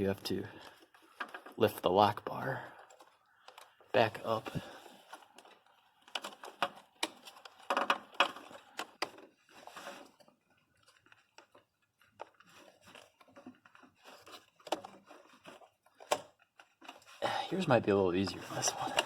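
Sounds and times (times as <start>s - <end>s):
plastic connectors clicking and snapping: 5.1s - 9.4s.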